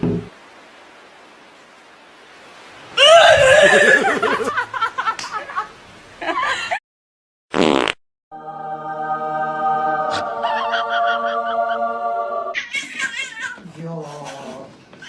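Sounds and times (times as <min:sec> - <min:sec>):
person laughing: 0:03.0 - 0:05.6, 0:10.1 - 0:11.8.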